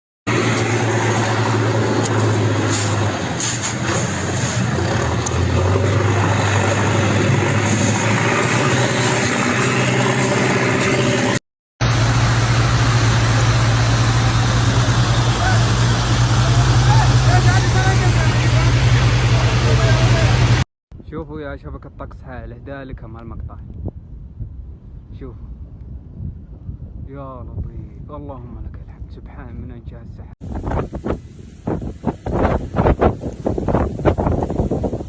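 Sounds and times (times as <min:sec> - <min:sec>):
motor vehicle engine drone: 0:00.3 - 0:20.7.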